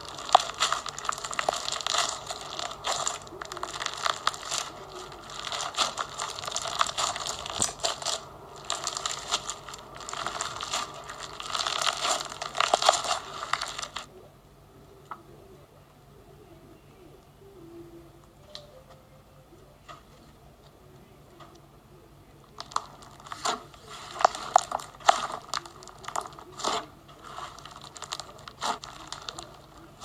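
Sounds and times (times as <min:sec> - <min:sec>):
slime squeezed crunchy crackling: 0:00.0 - 0:14.1, 0:22.6 - 0:30.0.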